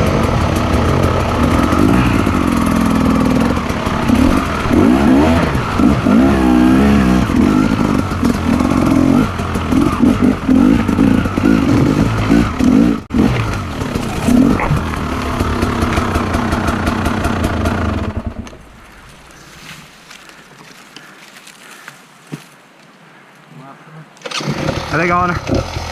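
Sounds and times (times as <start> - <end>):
motorcycle engine revving: 0.0 - 18.7, 24.3 - 25.9.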